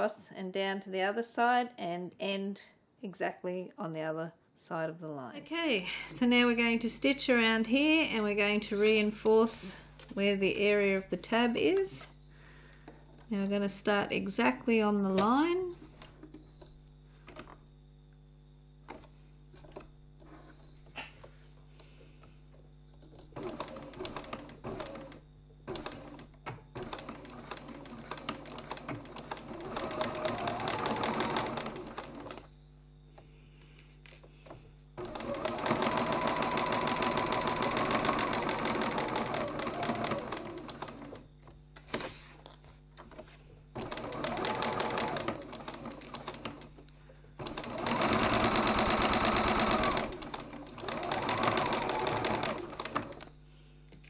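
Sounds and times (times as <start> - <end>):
sewing machine stitching: 23.0 - 32.5, 34.4 - 41.3, 43.0 - 46.8, 47.4 - 53.3.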